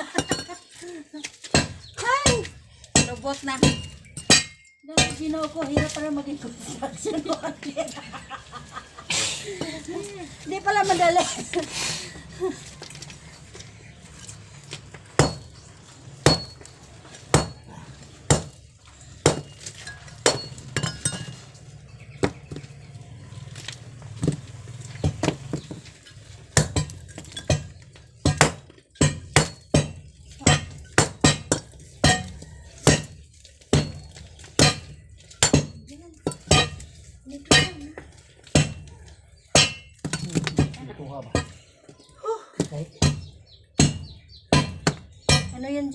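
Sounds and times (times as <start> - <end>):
metal hand tool striking concrete: 0.0 - 0.8, 1.4 - 7.4, 15.2 - 15.6, 16.2 - 17.7, 18.3 - 18.6, 19.2 - 21.5, 26.5 - 39.0, 39.6 - 45.7.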